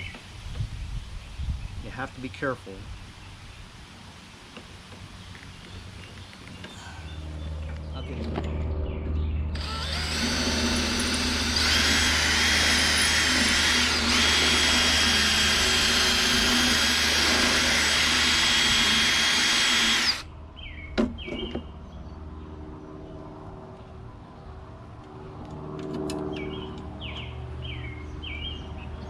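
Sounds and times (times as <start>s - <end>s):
bird chirping: 5.1s - 10.9s, 20.6s - 23.2s, 26.2s - 29.0s
electric drill whining: 9.6s - 20.2s.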